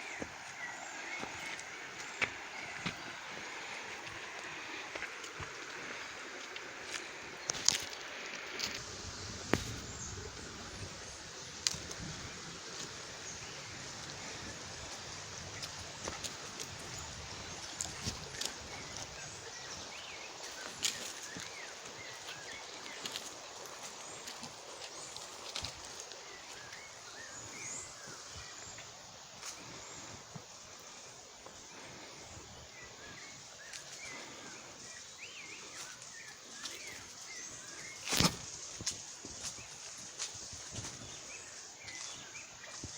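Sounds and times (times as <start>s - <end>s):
river water rushing: 0.0s - 26.8s
small birds chirping: 0.0s - 42.9s
steady background hiss: 0.0s - 42.9s.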